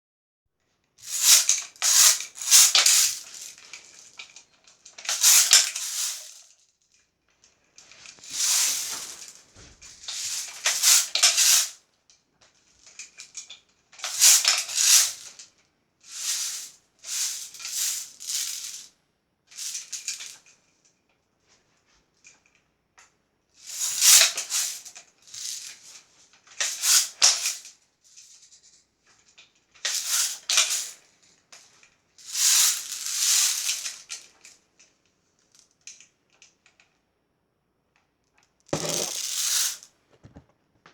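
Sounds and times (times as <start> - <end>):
bb gun rattling and clacking: 38.8 - 39.3.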